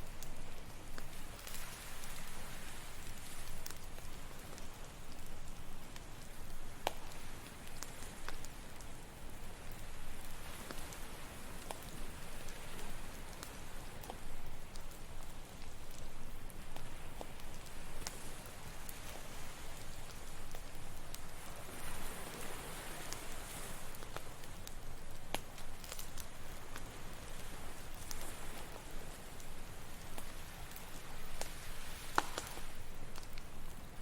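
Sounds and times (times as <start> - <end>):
campfire crackling and popping: 0.0 - 34.0
ocean waves: 1.1 - 4.5, 7.0 - 14.1, 16.6 - 24.7, 25.6 - 34.0.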